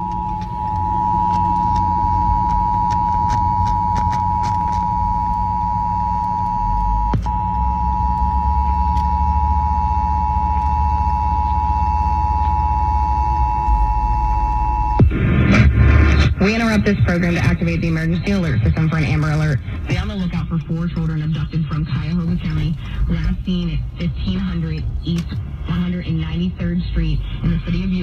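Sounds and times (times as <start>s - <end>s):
two-tone alarm: 0.0s - 16.2s
low hum: 0.0s - 28.0s.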